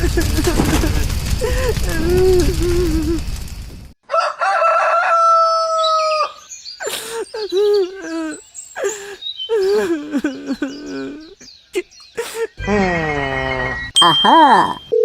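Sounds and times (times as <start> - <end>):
rooster crowing: 4.0 - 6.4.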